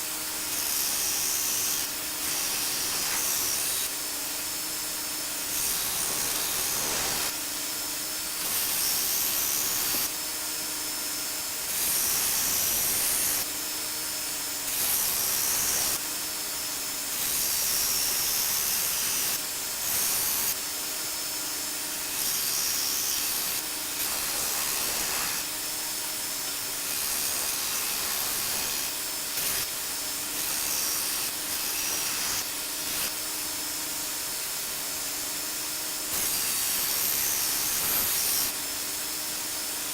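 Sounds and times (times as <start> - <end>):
belt sander running: 0.0 - 7.5, 22.0 - 34.2
blade grinding on belt hiss: 0.0 - 39.9.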